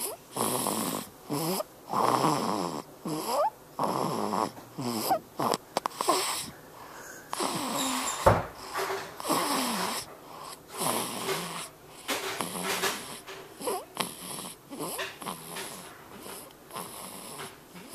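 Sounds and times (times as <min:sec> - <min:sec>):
baby snoring: 0:00.0 - 0:17.9.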